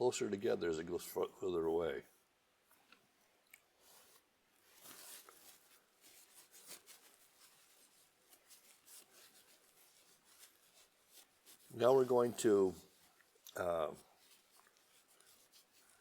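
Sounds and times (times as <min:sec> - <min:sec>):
paintbrush scratching on canvas: 0:04.8 - 0:16.0.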